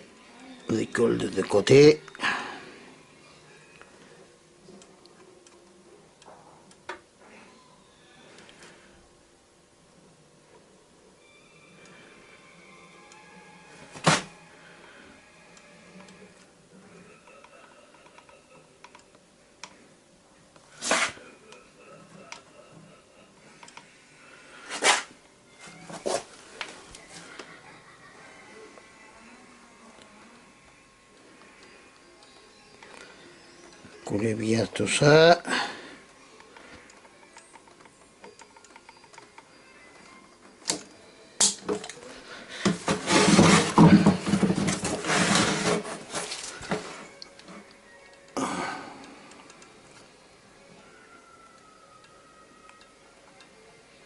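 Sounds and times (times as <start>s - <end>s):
scraping and rubbing plastic: 42.7s - 47.0s.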